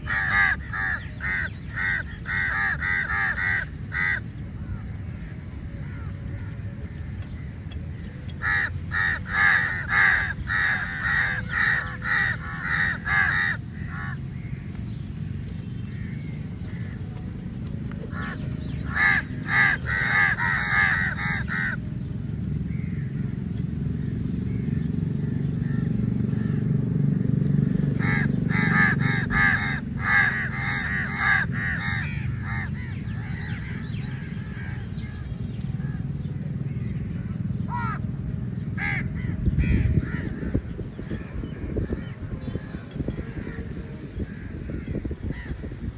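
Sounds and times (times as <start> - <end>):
crows cawing: 0.0 - 6.7, 8.3 - 14.7, 18.1 - 22.0, 27.9 - 38.1, 38.8 - 45.6
steady low rumble: 0.0 - 45.9.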